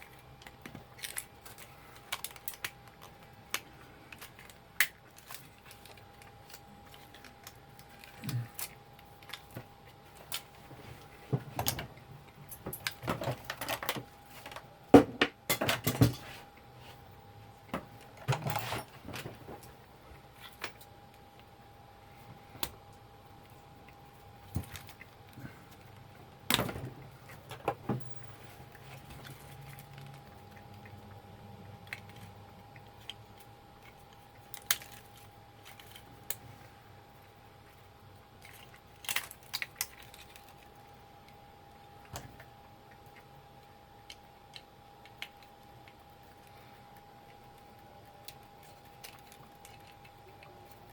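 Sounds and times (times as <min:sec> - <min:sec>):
plastic parts clicking and rattling: 0:00.0 - 0:10.6, 0:11.4 - 0:16.2, 0:31.8 - 0:36.4, 0:38.4 - 0:40.9, 0:44.0 - 0:50.9.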